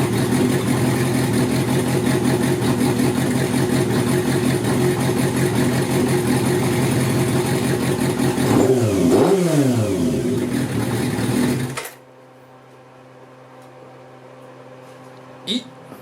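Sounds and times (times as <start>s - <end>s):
motorcycle engine running: 0.0s - 11.9s.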